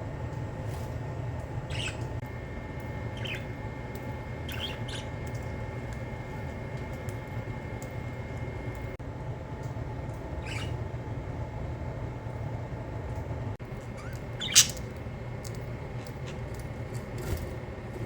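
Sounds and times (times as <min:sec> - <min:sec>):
steady low hum: 0:00.0 - 0:18.0
budgerigar chirping: 0:01.7 - 0:02.0, 0:03.2 - 0:03.5, 0:14.0 - 0:14.8.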